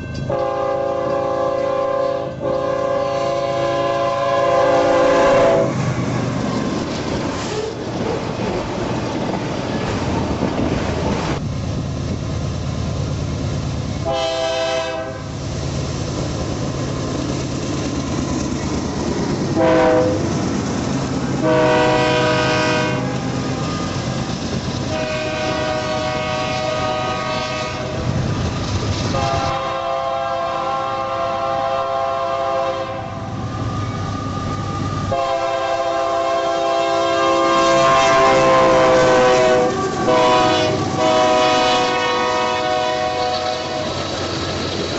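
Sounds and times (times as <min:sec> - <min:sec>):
moving train rumble: 0:00.0 - 0:44.9
locomotive air horn blasts: 0:00.3 - 0:05.9, 0:14.0 - 0:15.3, 0:19.6 - 0:20.2, 0:21.4 - 0:23.9, 0:24.9 - 0:28.1, 0:29.1 - 0:43.9.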